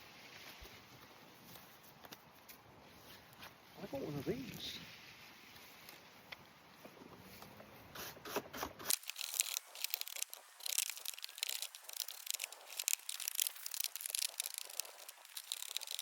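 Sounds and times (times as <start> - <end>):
grass scraped off lawnmower: 7.9 - 16.0.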